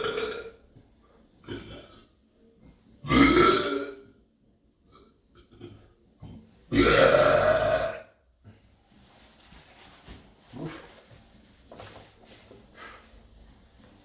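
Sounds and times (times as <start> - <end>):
person burping loudly: 0.0 - 0.6, 1.5 - 2.0, 3.0 - 4.0, 6.7 - 8.2.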